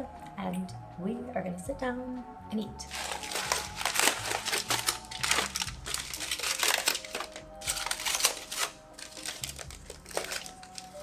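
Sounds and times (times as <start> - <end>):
faint background music: 0.0 - 11.0
crisp crackling and clicking: 2.9 - 11.0.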